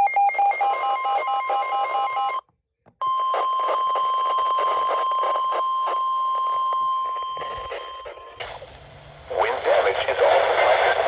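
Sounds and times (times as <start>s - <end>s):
steady warning alarm tone: 3.0s - 8.4s.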